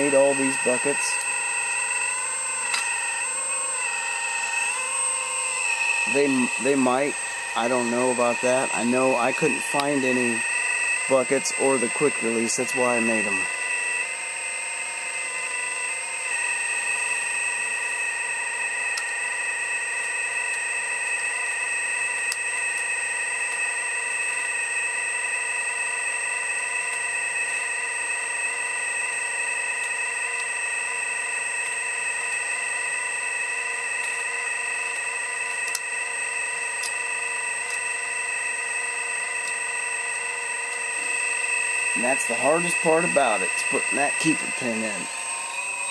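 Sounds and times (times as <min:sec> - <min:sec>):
hydraulic pump whining: 0:00.0 - 0:45.9.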